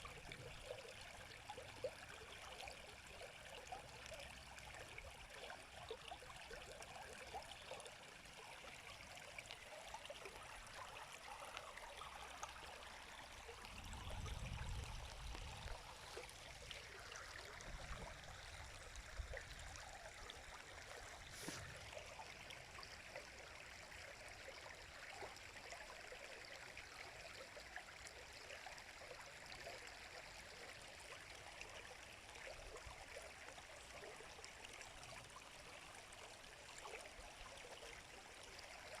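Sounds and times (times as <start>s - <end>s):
river flowing: 14.8s - 25.6s.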